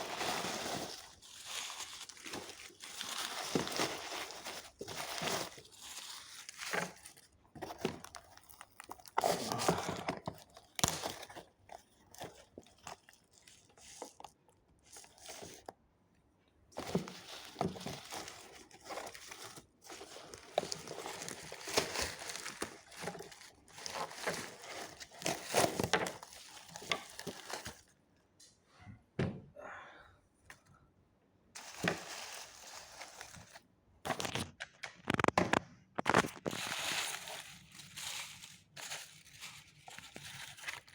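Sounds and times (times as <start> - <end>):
packaging crinkling and tearing: 0.0 - 15.7, 16.8 - 28.0, 31.6 - 40.9
thunks: 29.2 - 29.5.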